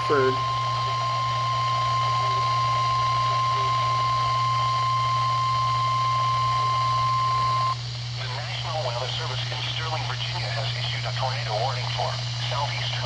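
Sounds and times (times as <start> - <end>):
steady high alarm beep: 0.0 - 7.8.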